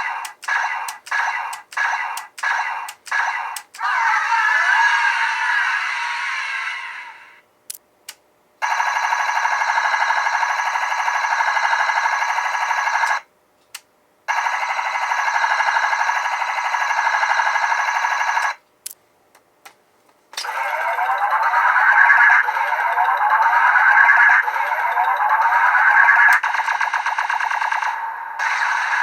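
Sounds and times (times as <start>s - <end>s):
toy rapid stuttering electronic buzz: 0.0s - 4.2s, 20.4s - 29.0s.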